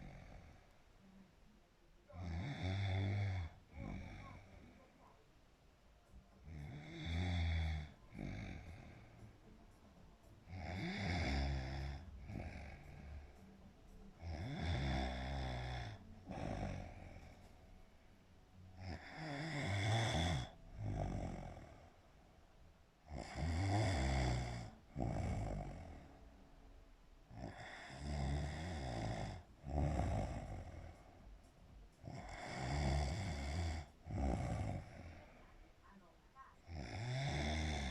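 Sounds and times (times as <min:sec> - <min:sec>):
loud rasping snoring: 0:02.1 - 0:04.8, 0:06.4 - 0:09.4, 0:10.4 - 0:13.4, 0:14.2 - 0:17.5, 0:18.8 - 0:22.0, 0:23.1 - 0:26.2, 0:27.3 - 0:31.3, 0:32.0 - 0:35.6, 0:36.6 - 0:37.9.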